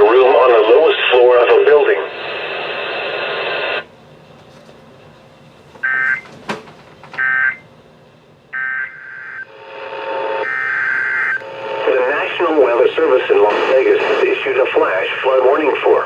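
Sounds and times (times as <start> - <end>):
radio hiss: 0.0 - 3.9, 9.2 - 16.0
warbling data tones: 8.6 - 15.0.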